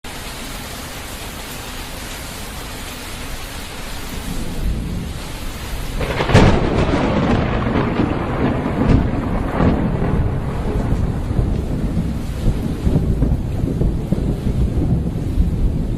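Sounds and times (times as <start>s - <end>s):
steady rain: 0.0s - 15.9s
thunder rumbling: 3.8s - 15.9s
loud thunder crack: 4.1s - 15.9s.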